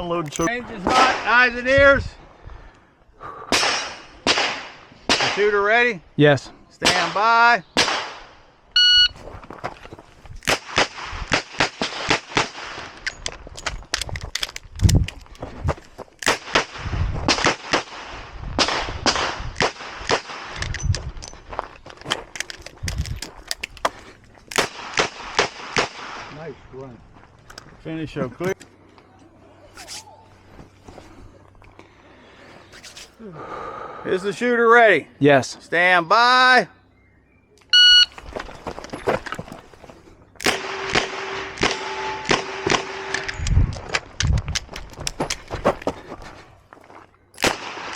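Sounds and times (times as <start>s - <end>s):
revolver gunshots: 3.5s - 5.5s, 7.8s - 8.3s, 40.4s - 43.4s, 47.4s - 47.9s
shot timer beep: 8.8s - 9.2s, 37.7s - 38.1s.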